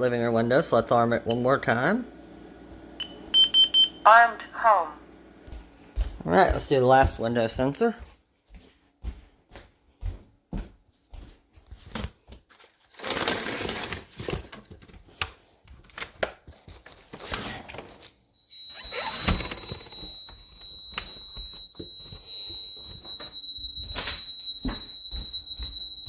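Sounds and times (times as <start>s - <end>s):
high-pitched alarm tone: 18.4s - 26.0s.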